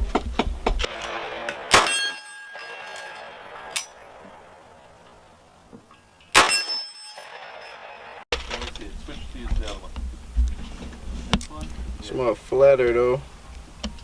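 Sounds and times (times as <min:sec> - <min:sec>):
gunshots with metallic ringing: 0:00.8 - 0:08.2.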